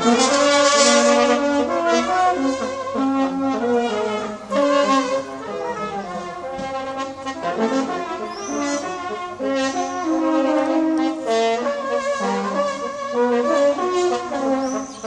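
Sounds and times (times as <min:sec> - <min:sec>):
brass-like horn tones: 0:00.0 - 0:15.0.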